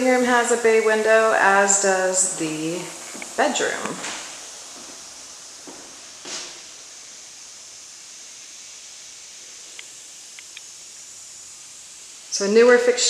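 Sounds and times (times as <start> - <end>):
steady background hiss: 0.0 - 13.0
faint high ticks: 9.7 - 10.7.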